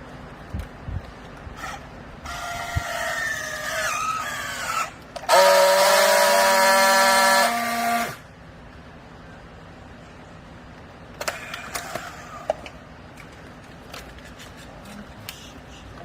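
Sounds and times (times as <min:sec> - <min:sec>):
hydraulic baler whining: 0:01.6 - 0:08.3.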